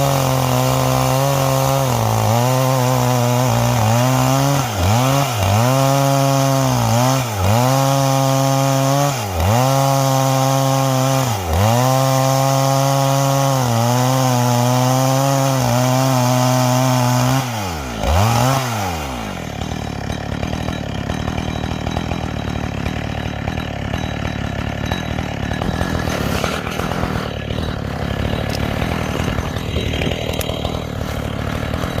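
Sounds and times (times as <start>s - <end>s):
chainsaw ripping wood: 0.0s - 32.0s.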